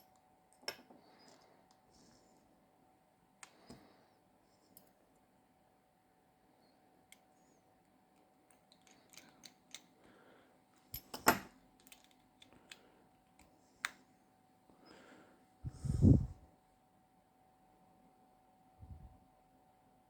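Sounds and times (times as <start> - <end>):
faint steady hum: 0.0 - 20.0
small tools clicking and tapping: 8.1 - 10.0, 10.9 - 14.0.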